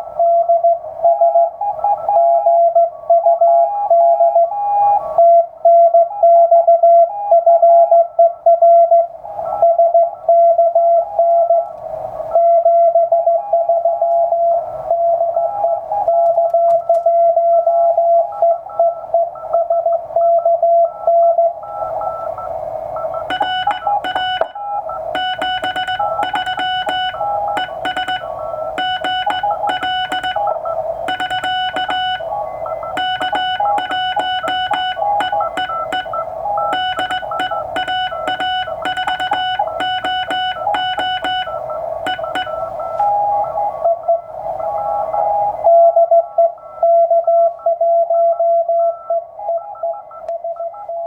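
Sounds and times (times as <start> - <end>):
morse code tone: 23.2 - 43.0
keyboard music: 23.3 - 24.6, 25.2 - 42.6.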